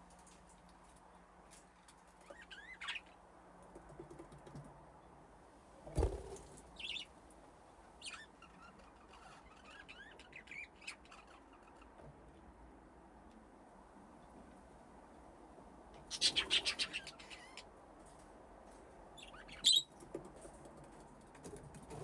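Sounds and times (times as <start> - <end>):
budgies chirping: 8.0 - 11.9, 16.1 - 17.6, 19.2 - 19.9.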